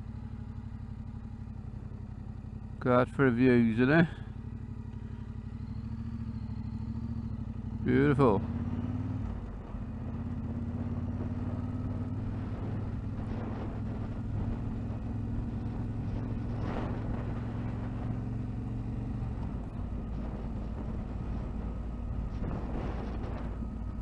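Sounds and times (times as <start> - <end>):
motorcycle engine running: 0.0 - 24.0
wind gusts on microphone: 19.5 - 24.0.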